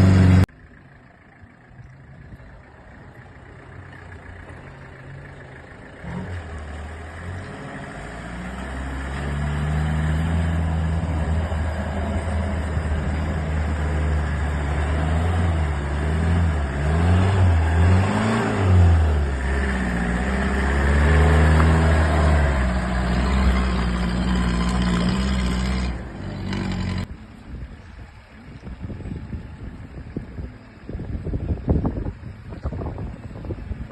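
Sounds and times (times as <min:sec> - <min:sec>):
off-road vehicle engine revving: 0:00.0 - 0:00.5, 0:04.1 - 0:27.1.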